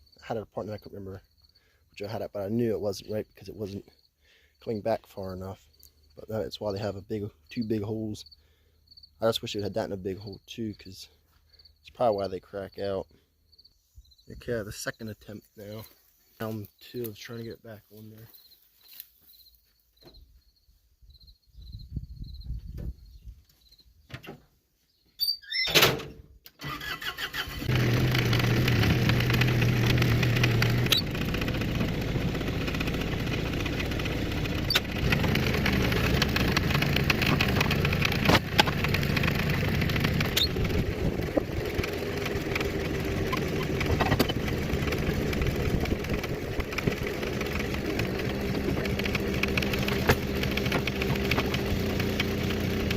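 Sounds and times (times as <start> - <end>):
skid loader engine running: 27.5 - 52.9.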